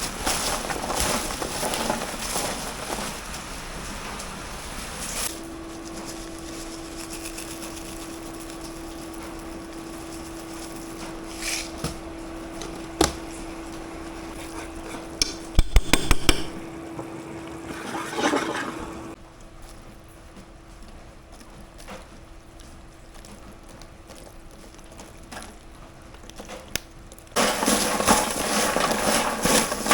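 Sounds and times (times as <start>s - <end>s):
steady low hum: 5.2s - 19.2s
pots and utensils clattering: 5.8s - 19.2s, 27.4s - 29.9s.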